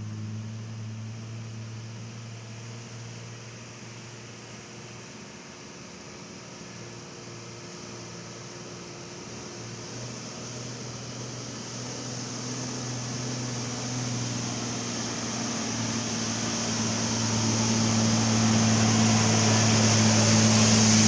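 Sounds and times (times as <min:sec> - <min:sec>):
diesel engine humming: 0:10.6 - 0:21.0.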